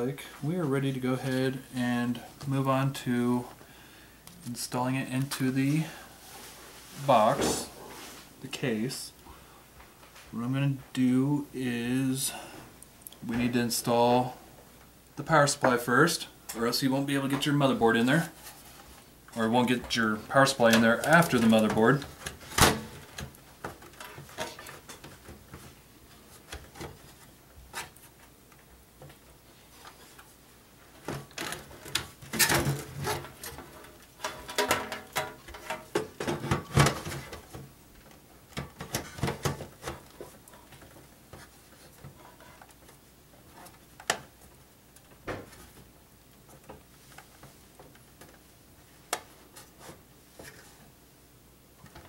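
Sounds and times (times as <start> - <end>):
knocks clicks and scrapes of handling: 20.6 - 29.2, 31.0 - 48.5.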